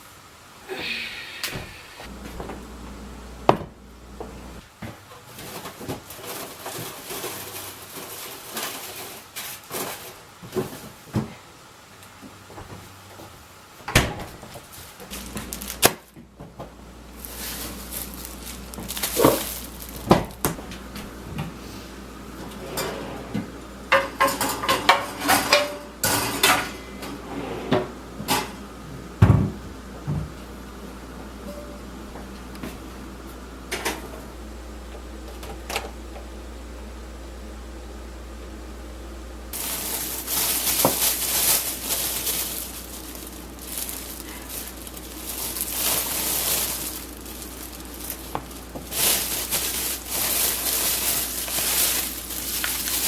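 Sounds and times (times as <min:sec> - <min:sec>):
low steady hum: 0:00.0 - 0:04.8, 0:13.8 - 0:53.0
cupboard doors opening and closing: 0:13.8 - 0:14.6
dishes and pans clattering: 0:22.6 - 0:26.8.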